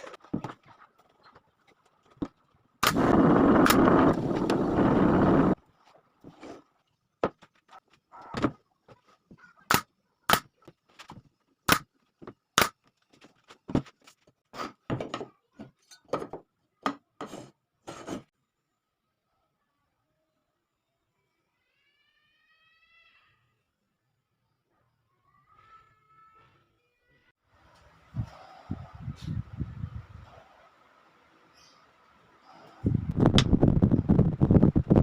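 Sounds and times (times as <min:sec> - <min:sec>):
power tool running: 0:02.8 - 0:05.6.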